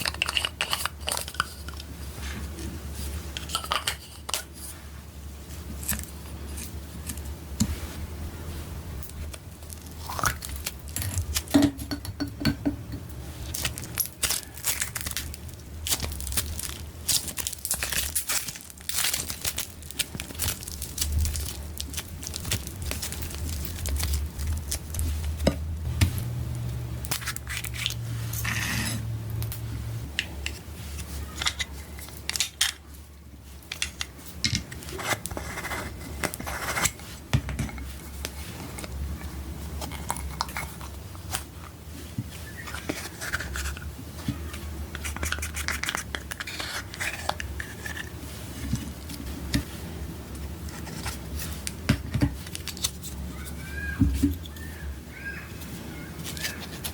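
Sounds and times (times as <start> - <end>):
utensils scraping containers: 0.0 - 2.4, 27.1 - 29.1, 42.4 - 43.9, 44.9 - 49.6
steady low hum: 0.0 - 53.4.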